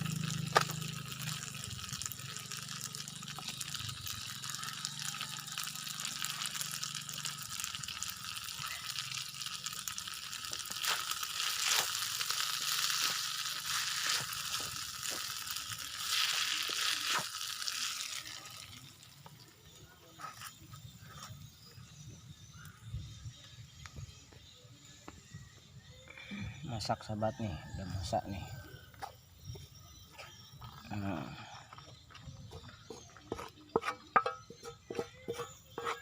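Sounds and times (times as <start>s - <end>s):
rice sizzling in a pan: 0.0s - 23.2s, 31.9s - 36.0s
spatula scraping pan: 32.9s - 36.0s.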